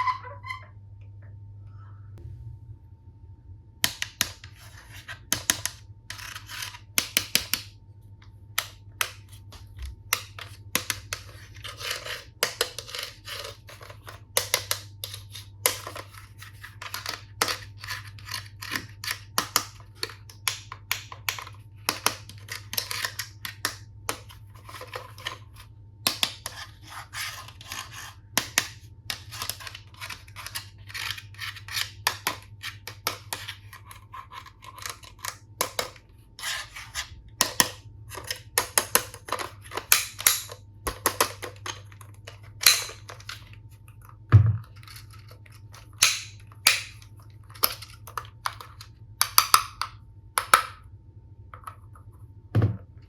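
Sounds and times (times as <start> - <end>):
faint steady hum: 0.0 - 53.0
plastic pieces clicking and tapping: 5.3 - 7.7, 10.1 - 16.1, 16.8 - 25.4, 28.4 - 33.6, 34.6 - 36.0, 37.4 - 43.5, 44.7 - 50.8.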